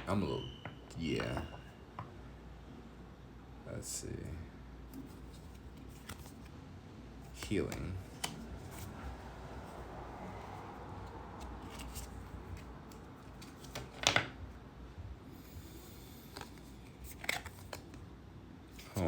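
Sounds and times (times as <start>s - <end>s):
cards being handled and flipped: 4.9s - 6.6s, 7.2s - 9.8s, 10.4s - 14.4s, 16.2s - 18.1s, 18.7s - 19.0s
card snapping: 16.3s - 18.0s.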